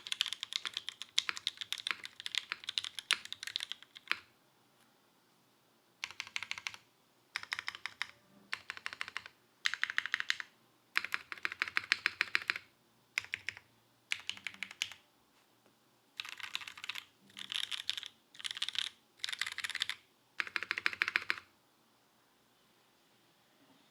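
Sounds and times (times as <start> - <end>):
mechanical keyboard typing: 0.0 - 4.3, 6.0 - 6.8, 7.4 - 15.0, 16.2 - 21.5.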